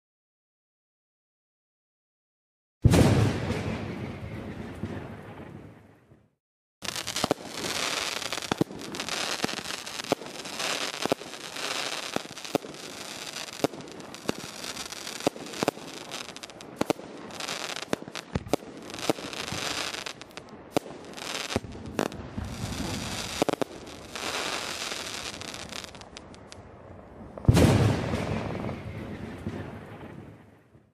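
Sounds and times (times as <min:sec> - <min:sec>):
firework crackling: 0:06.8 - 0:26.6
firework sharp pops: 0:06.8 - 0:26.6, 0:27.4 - 0:30.1.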